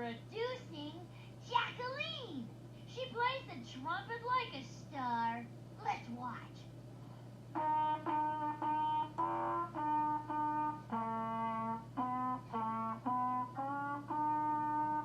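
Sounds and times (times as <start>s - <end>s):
steady low hum: 0.0s - 15.0s
trumpet playing a tune: 7.5s - 15.0s.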